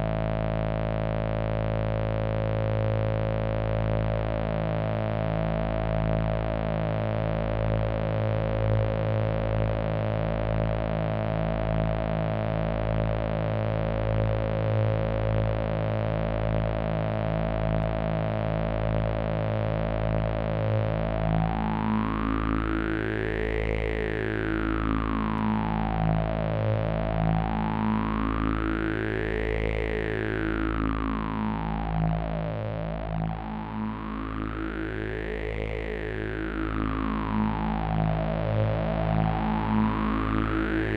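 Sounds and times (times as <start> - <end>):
buzzing synthesizer drone: 16.0 - 40.9.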